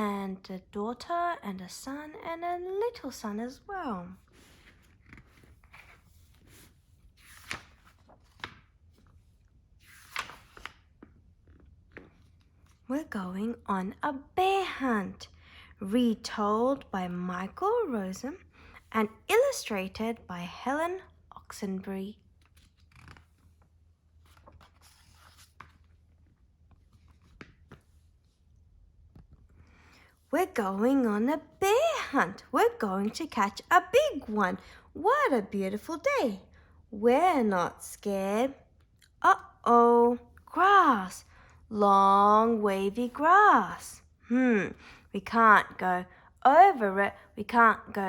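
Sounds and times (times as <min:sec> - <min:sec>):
book pages turning: 0:04.2 - 0:12.9, 0:22.2 - 0:29.7.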